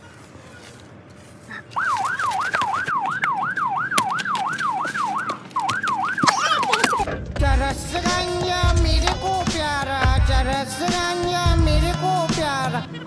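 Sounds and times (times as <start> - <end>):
electronic siren yelp: 1.6 - 7.1.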